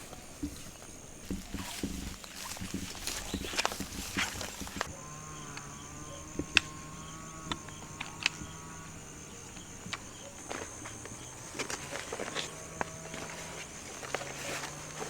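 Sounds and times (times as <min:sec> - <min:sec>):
camping gear knocks and clicks: 0:00.0 - 0:04.9
insect drone: 0:00.0 - 0:15.0.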